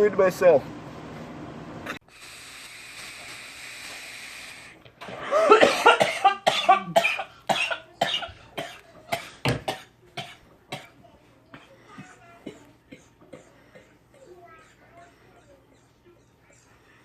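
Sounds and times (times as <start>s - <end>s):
breathy inhale hiss: 2.0s - 4.8s
man coughing: 5.2s - 9.9s.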